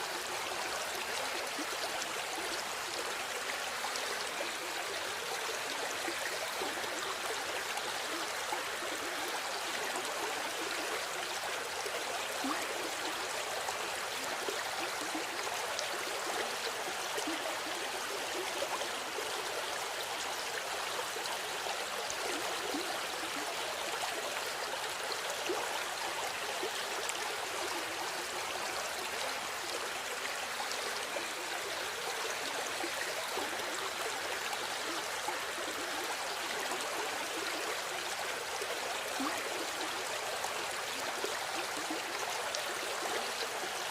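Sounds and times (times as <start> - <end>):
river water flowing: 0.0 - 43.9.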